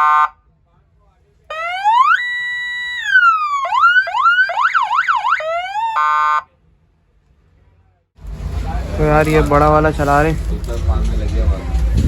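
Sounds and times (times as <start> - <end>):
police siren wailing: 1.5 - 6.5.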